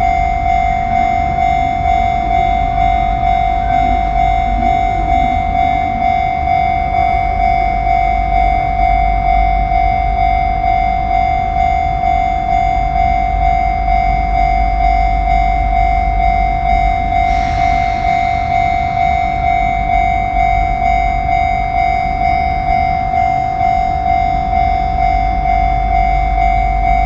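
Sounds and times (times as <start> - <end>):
low rumble: 0.0 - 8.9, 16.2 - 22.0
level crossing warning bell: 0.0 - 27.0.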